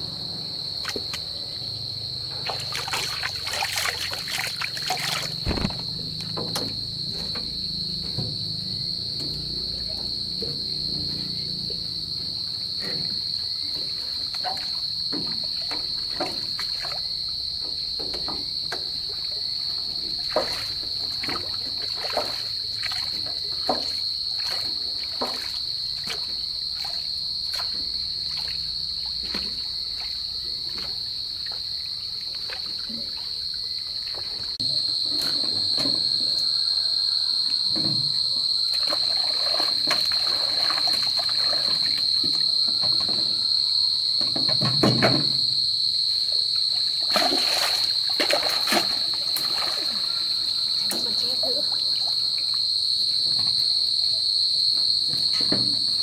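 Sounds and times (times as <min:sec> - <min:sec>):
water splashing: 0:00.0 - 0:06.9, 0:20.2 - 0:28.7, 0:38.4 - 0:45.4, 0:46.1 - 0:53.9
insects chirring: 0:00.0 - 0:56.0.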